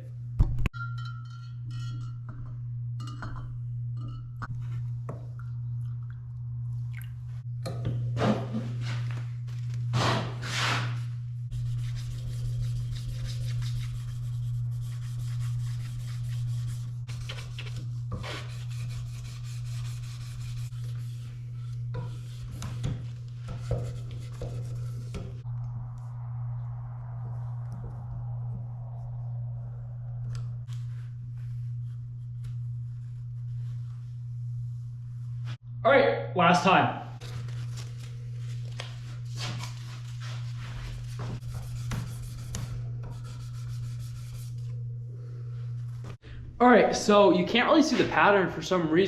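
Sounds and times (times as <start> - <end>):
steady low hum: 0.0 - 49.0
sandpaper rubbing on knife blade: 10.4 - 21.3.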